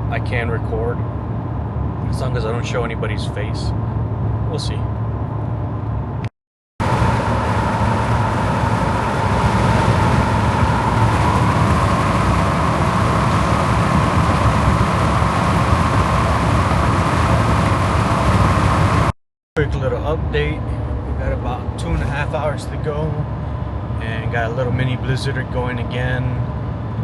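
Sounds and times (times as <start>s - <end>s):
road and tyre noise in car: 0.0s - 27.0s
faint steady whine: 6.8s - 27.0s.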